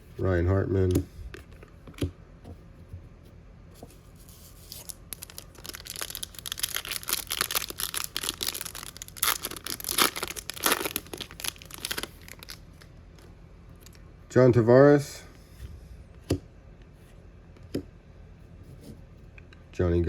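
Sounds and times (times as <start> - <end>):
foil wrapper torn and crinkled: 4.6 - 12.9.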